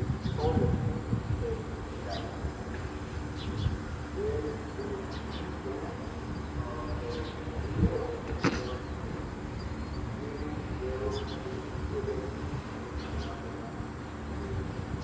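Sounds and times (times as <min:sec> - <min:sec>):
air conditioner fan hum: 0:00.0 - 0:15.0
faint bird calls: 0:03.4 - 0:13.7.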